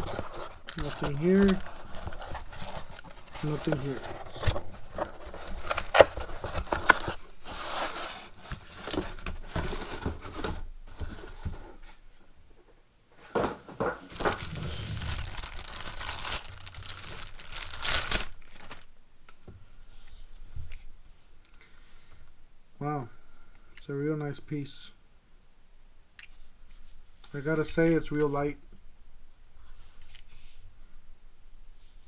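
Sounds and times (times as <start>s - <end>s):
packaging crinkling and tearing: 0.0s - 9.3s, 14.1s - 18.9s.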